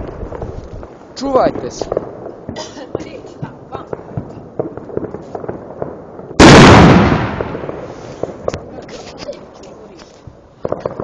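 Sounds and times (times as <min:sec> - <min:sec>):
distant firecrackers crackling: 0:00.0 - 0:11.0
loud firework bang: 0:04.2 - 0:08.7.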